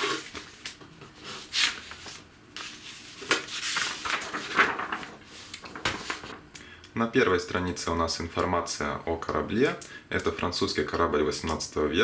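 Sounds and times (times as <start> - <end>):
booklet pages turning: 0.0 - 6.4
paper rustling: 0.0 - 6.4.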